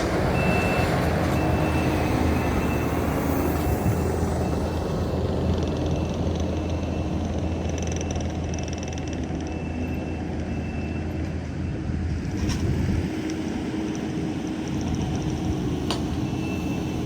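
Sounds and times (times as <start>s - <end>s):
heavy diesel engine running: 0.0s - 17.0s.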